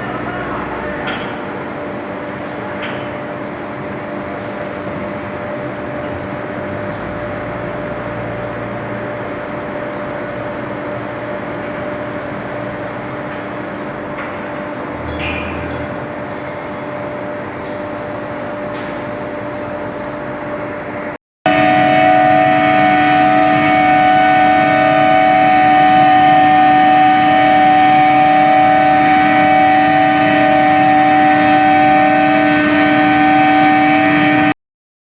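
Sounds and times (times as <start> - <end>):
machinery humming: 0.0 - 34.6
metal clanks: 14.9 - 16.0.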